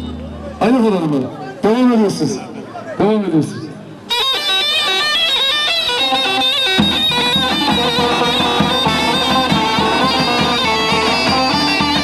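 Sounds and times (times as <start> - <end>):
wind instrument melody: 4.0 - 12.0.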